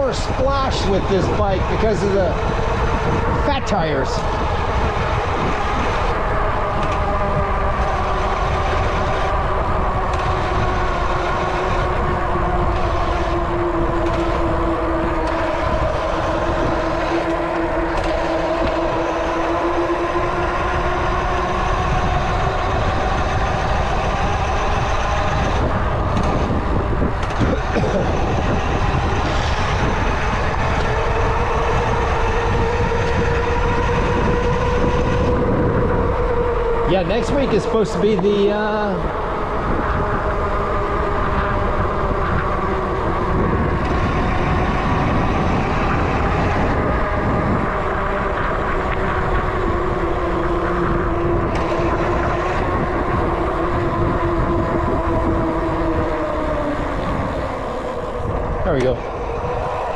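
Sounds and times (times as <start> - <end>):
bike tires humming on pavement: 0.0 - 59.9
wind rumble on microphone: 0.0 - 59.9.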